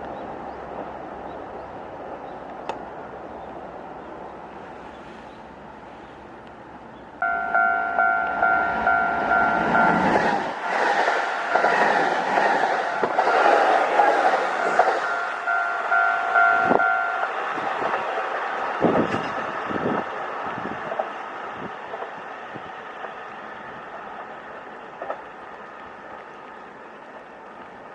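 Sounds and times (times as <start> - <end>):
electric train passing: 0.2 - 27.9
level-crossing alarm ringing: 7.2 - 10.4, 14.5 - 17.6.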